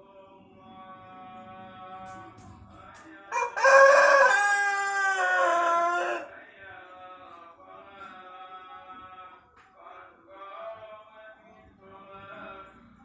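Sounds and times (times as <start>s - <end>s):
faint chant-like music with singing: 0.0s - 13.0s
rooster crowing: 3.3s - 6.3s.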